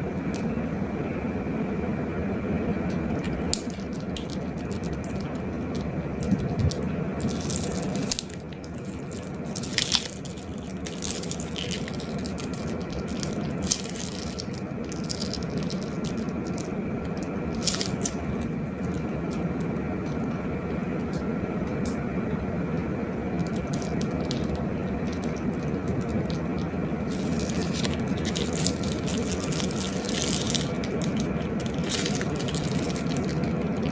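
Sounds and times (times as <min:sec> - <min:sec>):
slime squelching: 0:03.0 - 0:20.2, 0:23.4 - 0:33.9.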